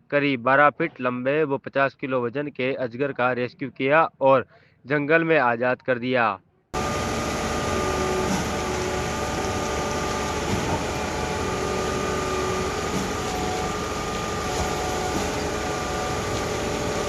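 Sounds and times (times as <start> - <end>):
engine running: 6.8 - 17.0
noisy background: 6.8 - 17.0.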